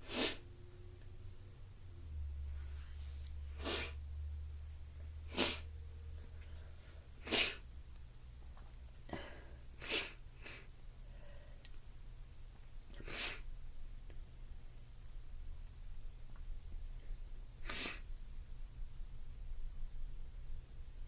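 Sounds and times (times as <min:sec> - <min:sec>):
person sneezing: 0:03.6 - 0:04.0, 0:05.3 - 0:05.7, 0:07.2 - 0:07.6, 0:09.1 - 0:10.7, 0:13.0 - 0:13.4, 0:17.6 - 0:18.0.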